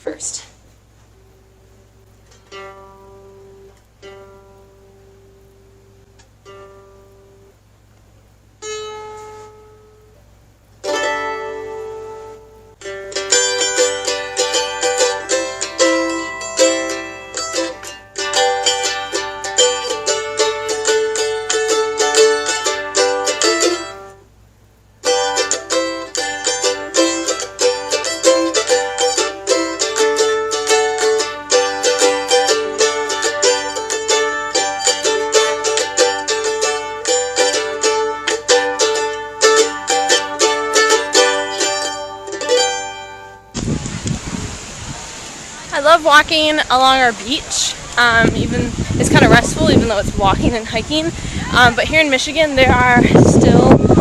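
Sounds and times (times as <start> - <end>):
mandolin playing quick picked notes: 10.8 - 24.2, 25.0 - 44.9.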